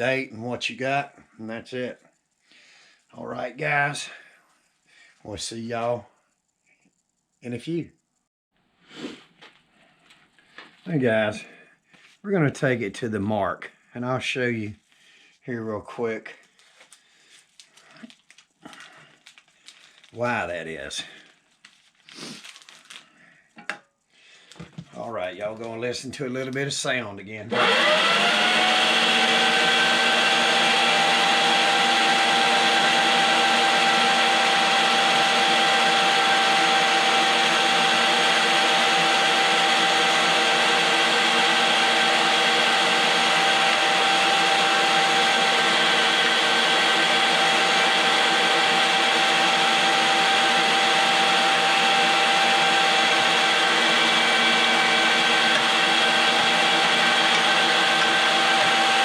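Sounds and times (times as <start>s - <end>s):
electric meat grinder running: 27.5s - 59.0s.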